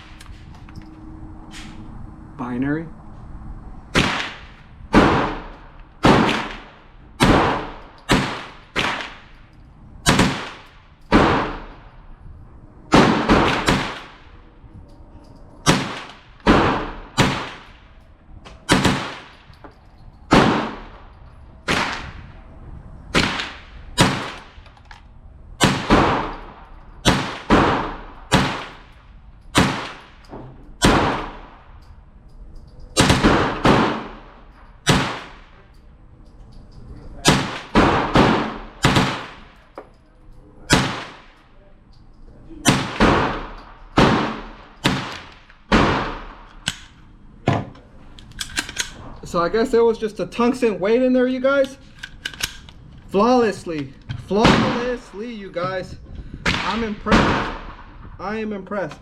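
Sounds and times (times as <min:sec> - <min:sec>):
rifle gunshots: 0:03.9 - 0:09.3, 0:10.0 - 0:11.8, 0:12.9 - 0:14.3, 0:15.6 - 0:17.8, 0:18.7 - 0:19.5, 0:20.3 - 0:21.1, 0:21.7 - 0:22.2, 0:23.1 - 0:24.6, 0:25.6 - 0:29.0, 0:29.6 - 0:30.2, 0:30.8 - 0:31.7, 0:33.0 - 0:35.6, 0:37.2 - 0:39.6, 0:40.7 - 0:41.4, 0:42.6 - 0:46.9, 0:54.4 - 0:55.1, 0:56.5 - 0:58.0.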